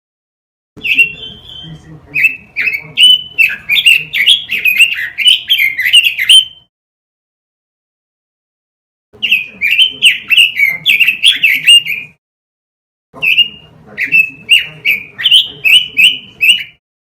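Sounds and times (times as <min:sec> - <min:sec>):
bird singing whistled notes: 0:00.8 - 0:06.7, 0:13.2 - 0:16.8.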